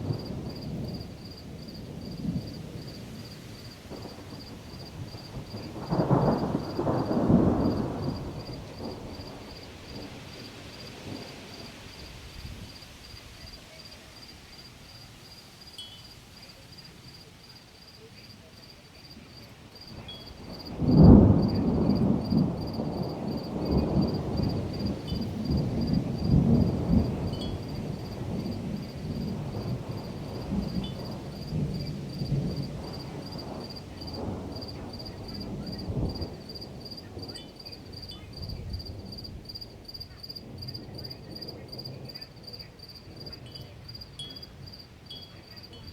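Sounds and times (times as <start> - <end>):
thunder clap: 0.0 - 12.8, 19.8 - 42.4
thunder rumbling: 0.0 - 14.6, 16.8 - 45.9
crickets chirping: 0.0 - 45.9.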